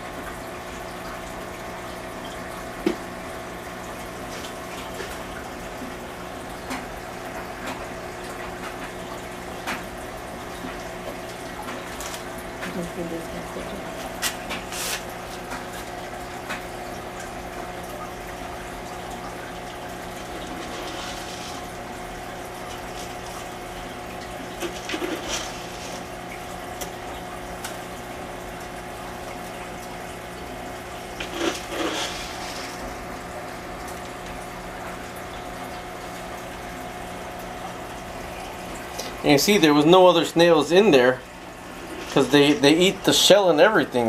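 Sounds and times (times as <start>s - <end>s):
pump hum: 0.0s - 44.0s
water trickling: 0.0s - 44.0s.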